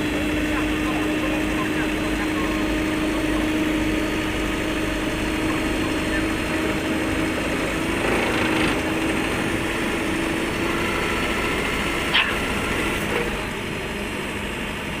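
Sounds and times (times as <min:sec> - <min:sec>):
excavator engine running: 0:00.0 - 0:15.0
vibratory compactor working: 0:00.0 - 0:15.0
sharp metal clank: 0:12.1 - 0:12.4.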